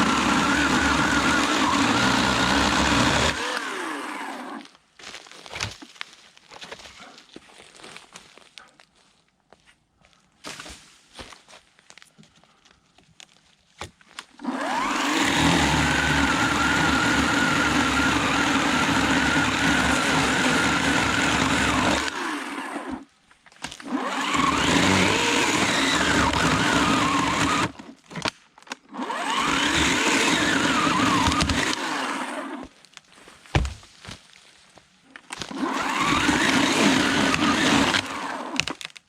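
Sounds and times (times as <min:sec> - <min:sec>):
electric chainsaw cutting wood: 0:00.0 - 0:04.7, 0:14.4 - 0:23.0, 0:23.8 - 0:32.7, 0:35.3 - 0:38.9.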